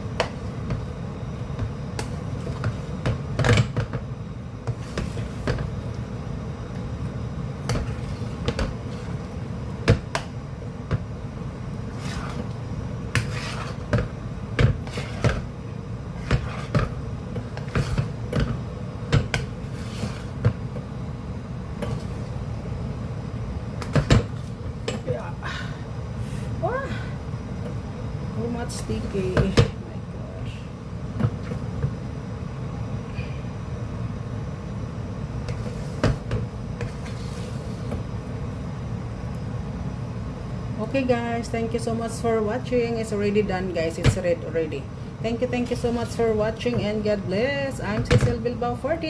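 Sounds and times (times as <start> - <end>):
steady low hum: 0.0 - 49.0
utensil scraping cooking pot: 11.8 - 14.0, 14.8 - 15.5, 16.1 - 18.2, 19.6 - 20.5.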